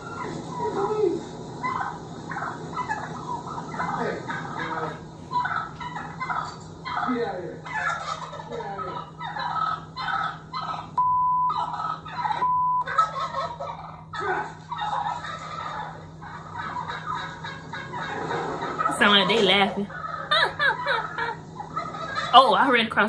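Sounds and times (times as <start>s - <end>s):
birds laughing calls: 0.0s - 22.9s
censor bleeps: 11.0s - 11.6s, 12.4s - 12.9s.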